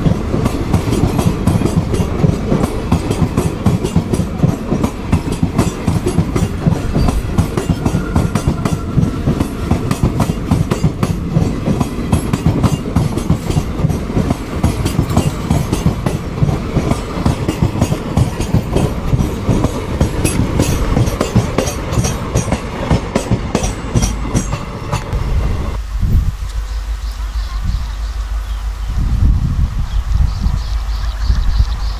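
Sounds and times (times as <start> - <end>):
train wheels clicking over rail joints: 0.0 - 25.3
train rumble: 0.0 - 31.9.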